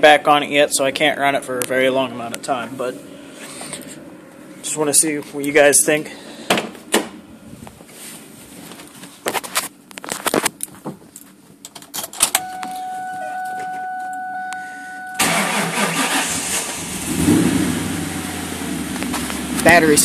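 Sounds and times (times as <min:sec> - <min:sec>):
electronic warning tone: 0:12.4 - 0:15.2
car engine cranking and starting: 0:15.1 - 0:20.0.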